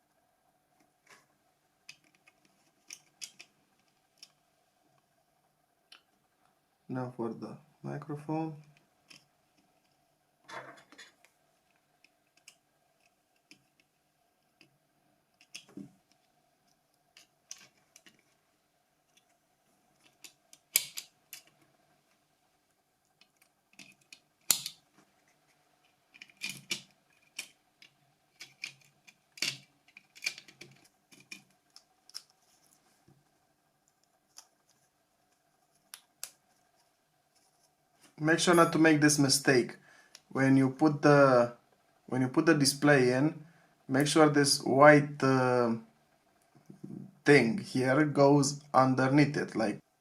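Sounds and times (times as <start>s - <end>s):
small plastic and metal parts clicking: 1.9s - 4.4s, 12.0s - 13.9s, 15.4s - 18.3s, 20.0s - 21.6s, 23.1s - 24.8s, 25.4s - 32.8s.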